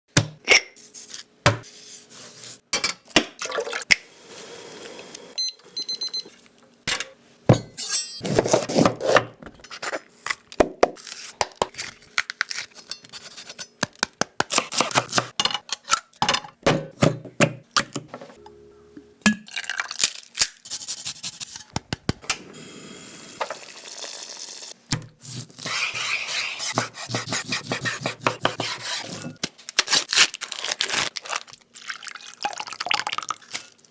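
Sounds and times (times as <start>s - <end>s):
utensils clinking on pots: 6.9s - 8.2s.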